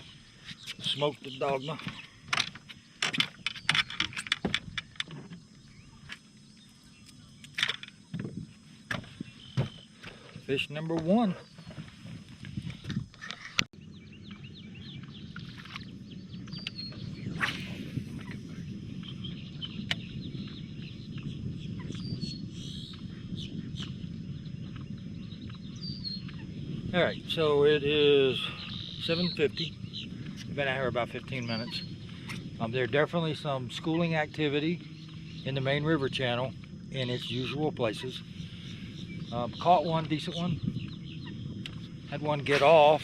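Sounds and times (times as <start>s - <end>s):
steady low rumble: 0.0s - 43.0s
fishing tackle clicks and rattles: 2.3s - 5.2s, 7.4s - 8.0s
birds chirping and clucking: 36.6s - 43.0s.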